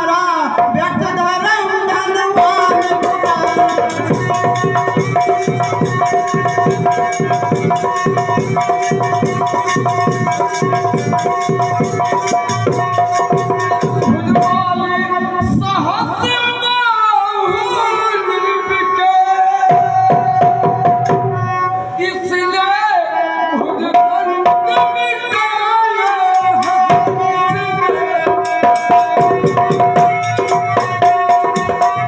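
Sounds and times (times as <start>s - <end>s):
person singing or declaiming: 0.0s - 5.3s
fast hand-drum beats: 2.3s - 16.5s, 19.7s - 21.6s, 23.7s - 32.0s.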